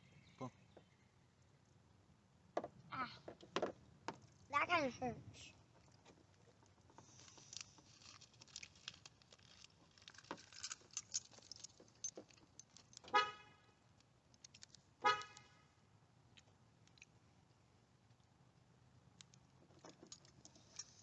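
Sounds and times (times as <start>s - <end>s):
clicking of parts being handled: 7.2s - 13.2s, 14.0s - 15.6s, 19.2s - 21.0s
car horn toots: 13.1s - 13.6s, 15.0s - 15.6s.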